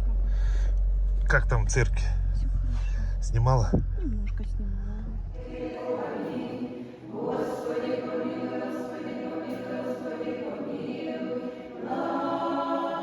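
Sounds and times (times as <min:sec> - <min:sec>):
church choir chanting: 0:05.4 - 0:13.0.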